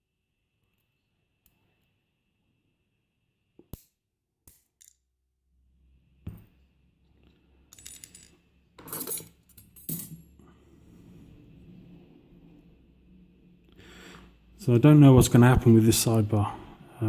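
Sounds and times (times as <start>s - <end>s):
small metal parts clicking: 4.5s - 5.1s, 7.7s - 10.2s.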